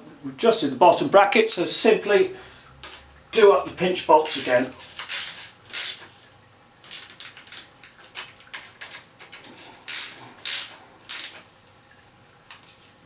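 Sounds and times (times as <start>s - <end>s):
ratchet wrench clicking: 4.2s - 6.0s, 9.9s - 11.4s.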